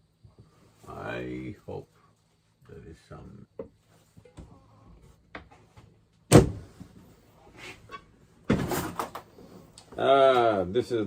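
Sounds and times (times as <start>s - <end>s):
cupboard doors and drawers shutting: 6.3s - 7.0s, 8.4s - 9.2s.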